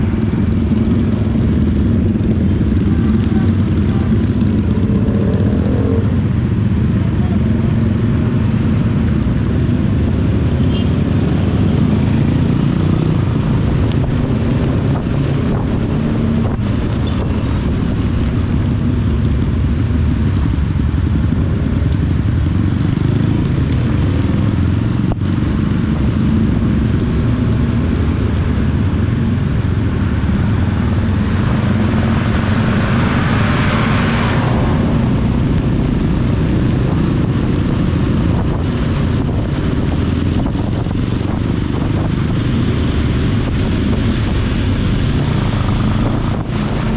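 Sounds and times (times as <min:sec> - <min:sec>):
motorcycle engine running: 0:00.0 - 0:16.4, 0:17.0 - 0:46.9
hiss of wind and rain: 0:26.4 - 0:46.9.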